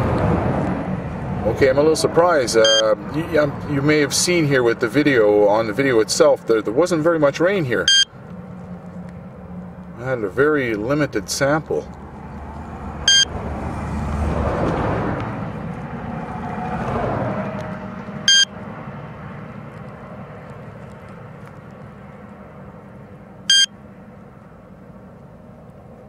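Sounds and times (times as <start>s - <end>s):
passing car: 0.0s - 26.0s
radiation detector beeps: 2.6s - 2.9s, 7.8s - 8.1s, 13.1s - 13.3s, 18.3s - 18.5s, 23.5s - 23.7s.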